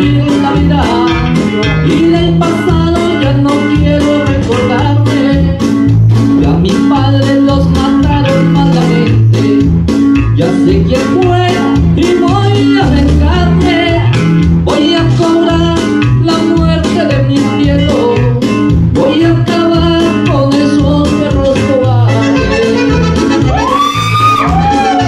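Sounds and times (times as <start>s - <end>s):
latin music with guitar: 0.0s - 25.0s.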